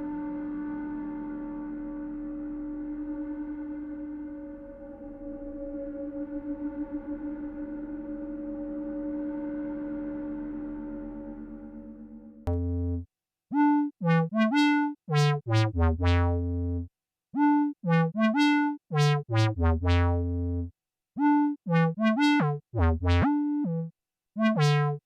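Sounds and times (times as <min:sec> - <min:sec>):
synthesizer plucked sequence: 0:11.2 - 0:25.0.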